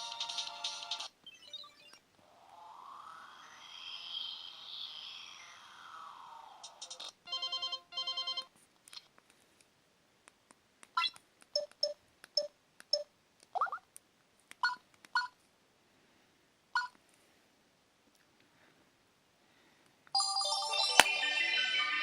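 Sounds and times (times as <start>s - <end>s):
phone beeps and chirps: 11.0s - 13.8s, 16.8s - 17.0s.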